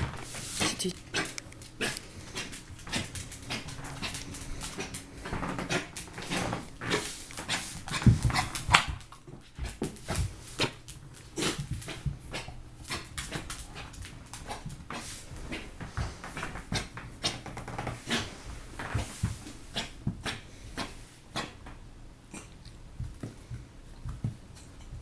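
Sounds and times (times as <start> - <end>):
dog coughing: 0.6 - 4.1.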